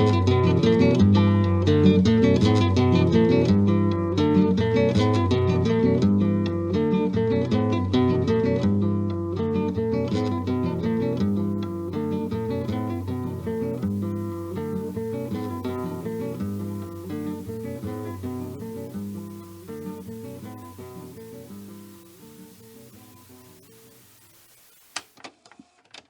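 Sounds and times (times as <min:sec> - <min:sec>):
acoustic guitar plucking: 0:00.0 - 0:24.0.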